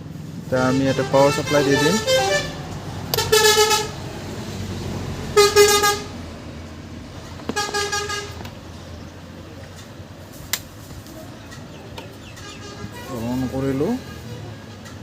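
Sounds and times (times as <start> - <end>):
vehicle horn honking: 0.6 - 4.0, 5.4 - 6.2, 7.5 - 8.4, 12.4 - 14.4.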